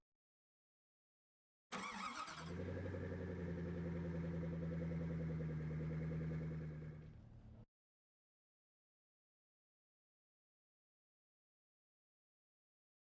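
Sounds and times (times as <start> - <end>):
engine starting and idling: 1.7 - 7.6.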